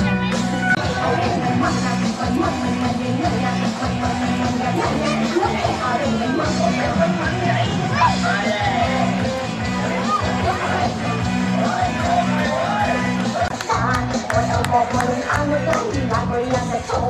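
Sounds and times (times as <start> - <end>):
loud music with bass and chords: 0.0 - 17.0
voices over music: 0.0 - 17.0.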